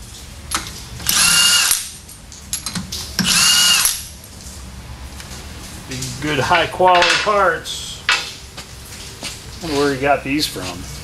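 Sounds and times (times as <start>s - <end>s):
power drill spinning lug nuts: 1.0s - 2.0s, 3.2s - 4.1s.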